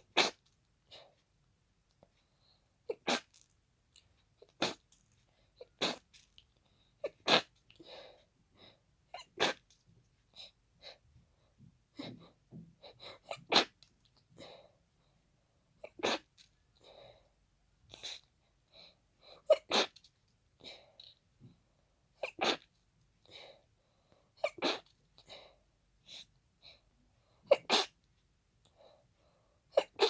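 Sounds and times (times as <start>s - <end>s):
person sneezing: 2.9s - 3.4s, 5.7s - 6.1s, 9.2s - 9.6s, 13.3s - 13.8s, 15.9s - 16.3s, 19.5s - 20.0s, 22.2s - 22.6s, 24.4s - 24.9s.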